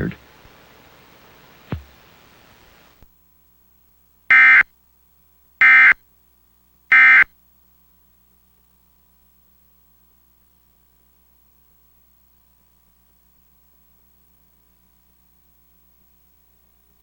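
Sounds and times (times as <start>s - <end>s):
buzzy two-tone data bursts: 4.3s - 4.6s, 5.6s - 6.0s, 6.9s - 7.3s.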